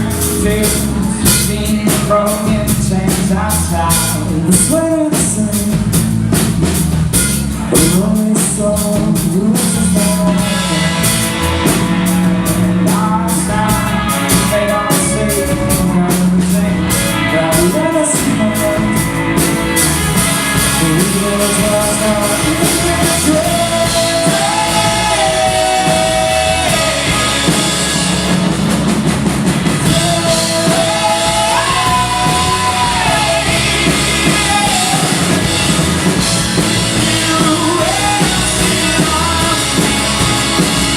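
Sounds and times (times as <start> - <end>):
drum kit with cymbals: 0.0 - 40.9
rock band playing live: 0.0 - 40.9
person singing long notes: 20.6 - 28.4, 29.8 - 40.9.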